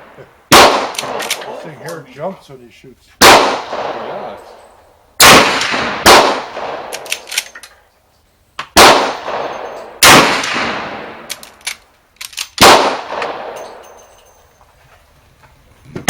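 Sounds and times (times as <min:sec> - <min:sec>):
gunshots with echoing decay: 0:00.0 - 0:01.8, 0:03.2 - 0:07.5, 0:08.6 - 0:11.6, 0:12.6 - 0:14.1.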